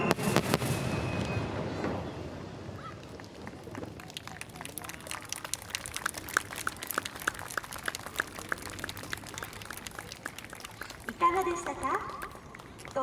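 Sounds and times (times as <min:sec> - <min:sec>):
spectators applauding: 0:02.8 - 0:13.0
person clapping steadily nearby: 0:03.0 - 0:13.0.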